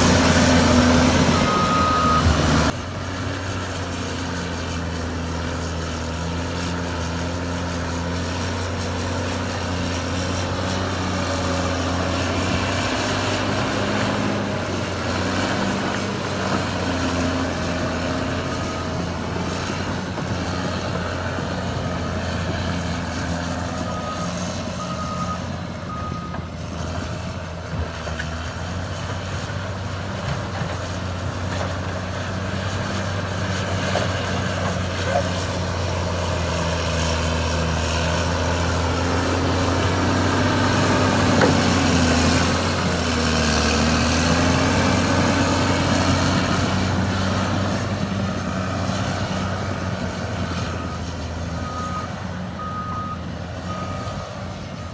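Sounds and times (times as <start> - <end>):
bulldozer diesel engine running: 0.0 - 54.9
backup alarm beeps: 1.0 - 2.7.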